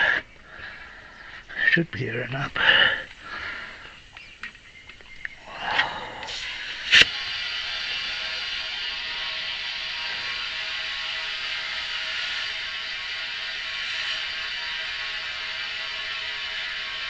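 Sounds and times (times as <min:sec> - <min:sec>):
compressed air hissing into tire: 0:00.0 - 0:17.0
sharp click: 0:06.9 - 0:07.2.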